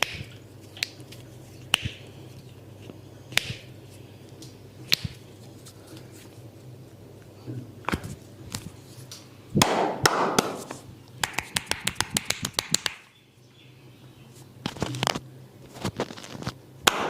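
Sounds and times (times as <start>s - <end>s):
low steady hum: 0.0s - 17.0s
hands slapping skin: 9.6s - 13.1s
rapid hand taps: 11.2s - 13.0s.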